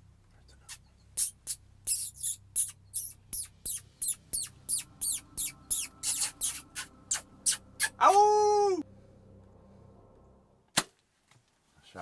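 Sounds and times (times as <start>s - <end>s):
high-pitched mouth squeaks: 0.6s - 8.2s.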